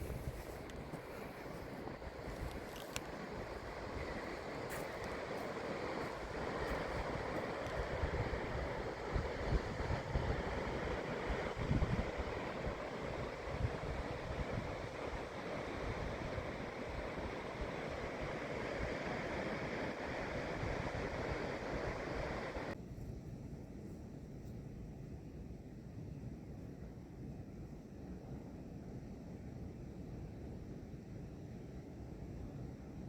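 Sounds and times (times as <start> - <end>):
wind buffeting microphone: 0.0 - 17.4
rushing water: 0.8 - 22.8.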